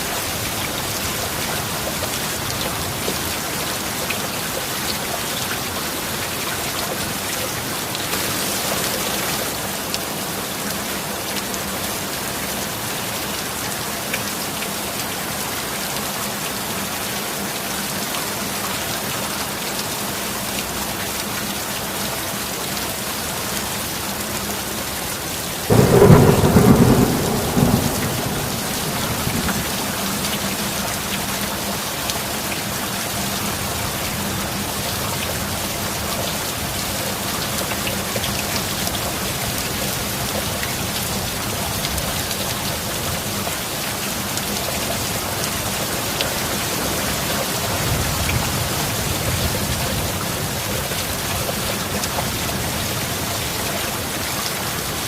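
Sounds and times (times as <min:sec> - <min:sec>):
steady rain: 0:00.0 - 0:55.0
thunder clap rumbling: 0:25.7 - 0:31.4.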